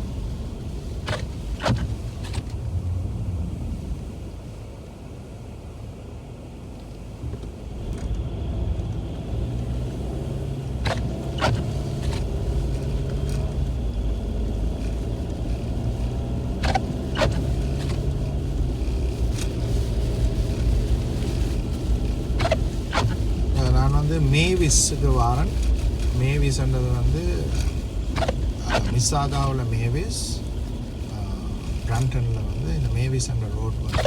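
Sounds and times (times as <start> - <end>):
car engine hum: 0.0 - 34.0
road rumble: 0.0 - 34.0.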